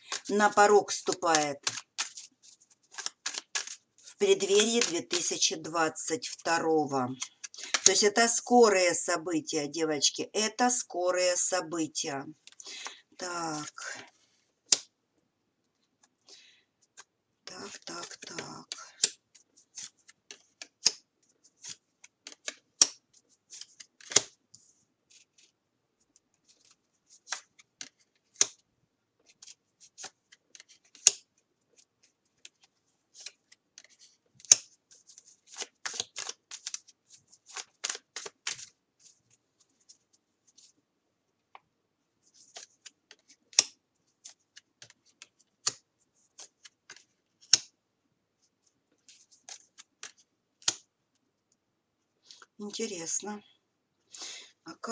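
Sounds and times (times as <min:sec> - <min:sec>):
cards snapping and sliding: 0:01.1 - 0:03.8, 0:14.7 - 0:14.9, 0:19.0 - 0:21.0, 0:21.6 - 0:24.4, 0:26.6 - 0:28.6, 0:29.4 - 0:31.3, 0:33.2 - 0:38.7, 0:42.4 - 0:47.7, 0:49.1 - 0:50.9.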